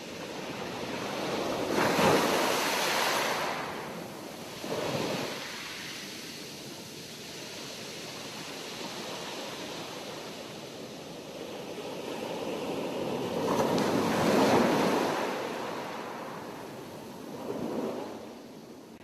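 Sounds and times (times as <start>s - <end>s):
sea waves breaking on shore: 0.0s - 18.4s.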